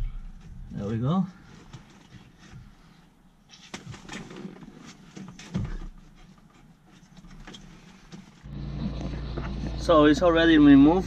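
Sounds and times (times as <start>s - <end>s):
steady low hum: 8.4s - 11.0s.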